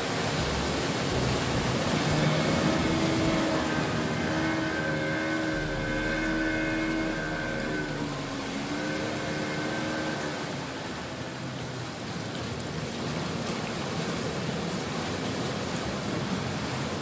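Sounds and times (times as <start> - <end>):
sea surf rushing: 0.0 - 17.0
engine passing: 0.1 - 12.2.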